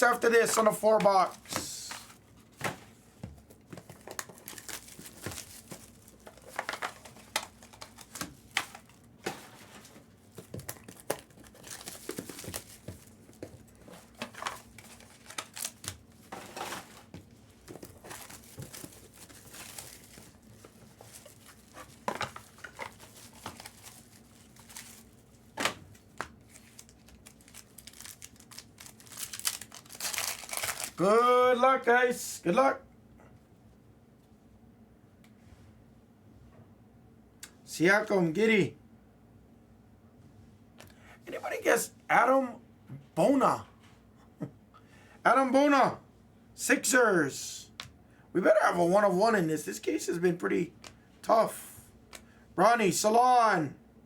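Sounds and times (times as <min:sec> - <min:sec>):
plastic wrappers tearing and crinkling: 0:04.0 - 0:09.2, 0:10.3 - 0:17.0, 0:17.7 - 0:31.0.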